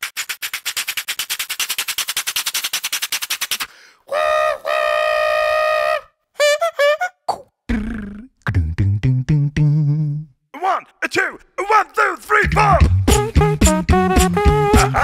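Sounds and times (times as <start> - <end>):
wavering mouth chirps: 4.1 - 10.3
held pitched mouth tone: 4.1 - 10.4, 12.4 - 15.0.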